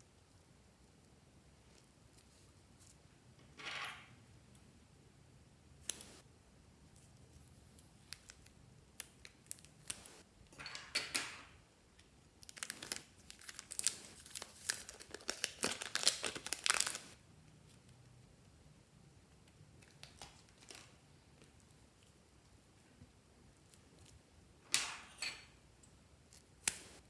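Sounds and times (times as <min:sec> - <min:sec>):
slime crackling and popping: 0:12.4 - 0:17.2.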